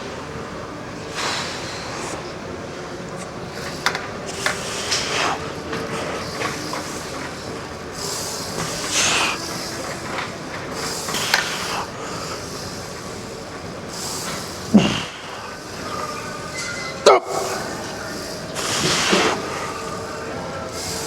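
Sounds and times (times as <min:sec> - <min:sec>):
hissing breaths: 0:01.0 - 0:02.5, 0:03.1 - 0:21.0.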